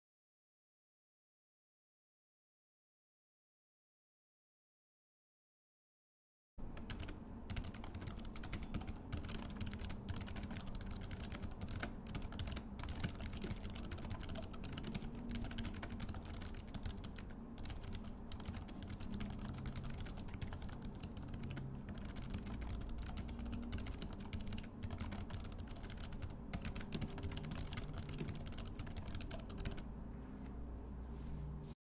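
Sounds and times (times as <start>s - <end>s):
fast typing on laptop keyboard: 6.8s - 29.9s.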